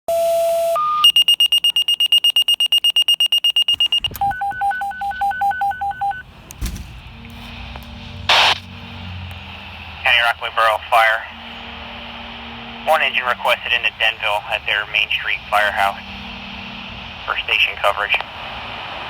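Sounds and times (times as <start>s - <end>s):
pager high beeps: 0.1s - 6.2s
two-tone pager tone: 0.1s - 6.2s
low hum: 3.8s - 19.0s
thump: 6.6s - 7.0s.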